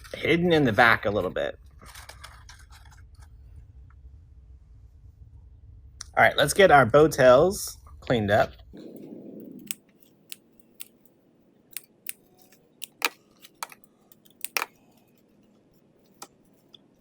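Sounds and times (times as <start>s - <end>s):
scissors snipping ribbon: 8.9s - 11.0s, 12.8s - 14.7s.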